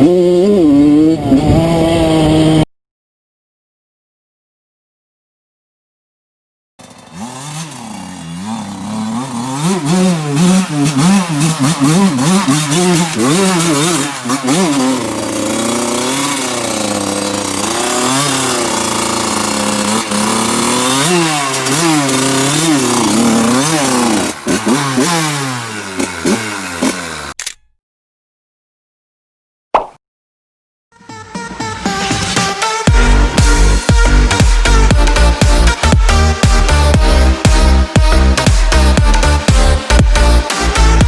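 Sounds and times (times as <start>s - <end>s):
dirt bike engine revving: 0.0s - 2.7s, 6.8s - 27.4s, 31.9s - 41.0s.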